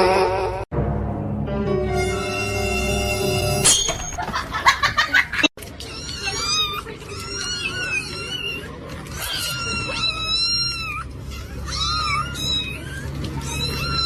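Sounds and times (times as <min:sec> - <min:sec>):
cat meowing: 0:05.8 - 0:14.0.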